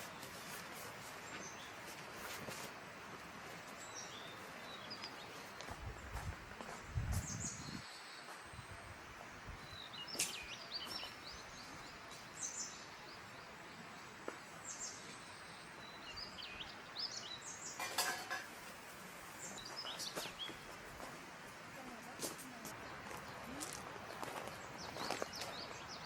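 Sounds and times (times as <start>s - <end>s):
small birds chirping: 0.0s - 2.7s, 3.4s - 26.0s
steady outdoor hiss: 0.0s - 26.0s.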